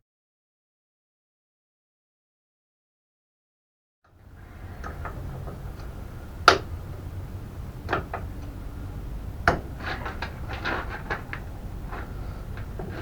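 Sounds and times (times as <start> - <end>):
tools knocking on metal: 9.4 - 11.4.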